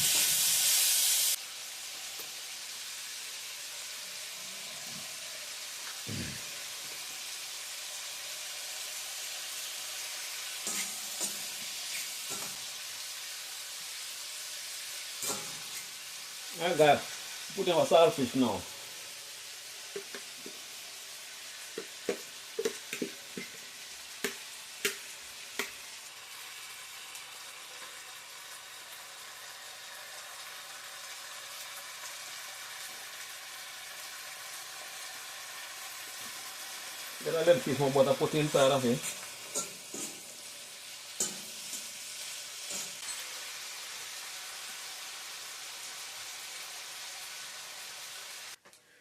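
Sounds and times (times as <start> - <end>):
fish sizzling in a pan: 0.0 - 49.0
stirring utensil knocking: 21.8 - 23.6.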